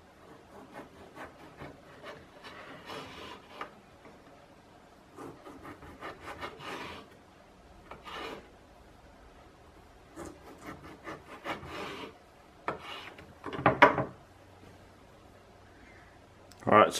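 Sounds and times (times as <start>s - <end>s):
serrated knife sawing tomato: 0.2s - 3.5s, 5.2s - 7.1s, 10.1s - 12.2s.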